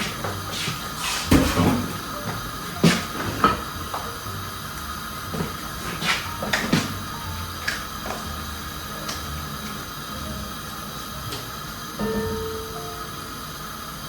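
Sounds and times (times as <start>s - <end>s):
steady low hiss: 0.0s - 14.0s.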